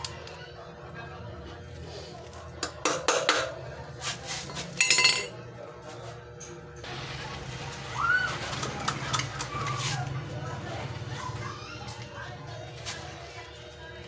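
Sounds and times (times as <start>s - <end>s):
metal tools clanking: 4.8s - 5.4s.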